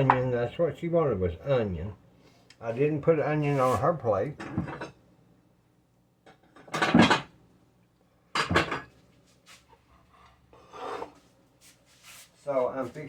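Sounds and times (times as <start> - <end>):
dishes and utensils clattering: 4.4 - 5.0, 6.3 - 7.3, 8.4 - 9.0.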